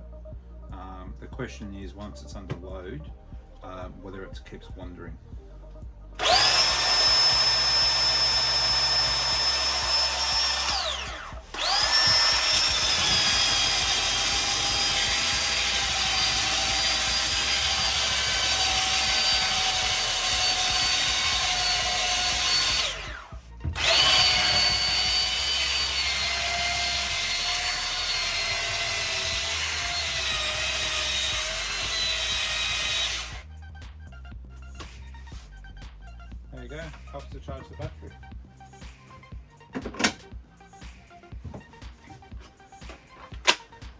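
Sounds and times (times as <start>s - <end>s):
belt sander whining: 6.2s - 33.4s.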